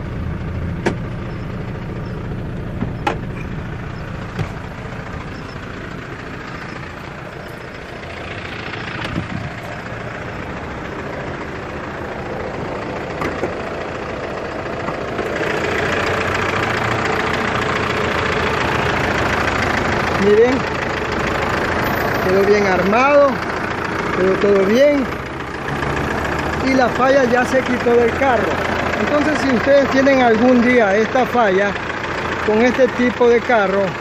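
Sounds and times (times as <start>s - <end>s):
diesel engine idling: 0.0s - 34.0s
sharp clicks and knocks: 2.8s - 3.5s, 4.3s - 4.7s, 13.2s - 13.6s.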